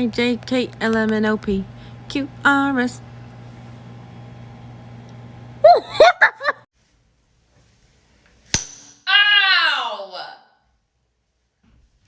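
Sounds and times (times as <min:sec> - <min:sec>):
low steady hum: 0:00.0 - 0:06.5
person laughing: 0:05.6 - 0:06.7.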